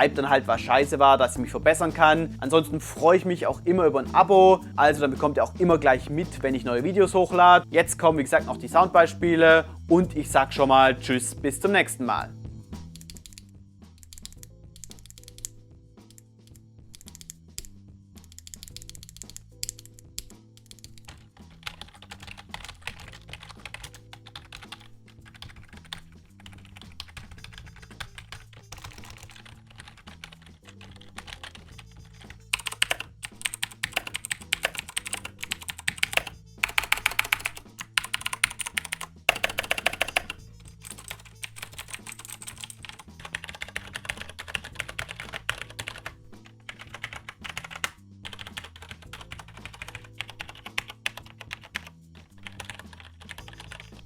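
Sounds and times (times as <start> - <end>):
background music: 0.0 - 54.0
keyboard key clicks: 12.9 - 21.2.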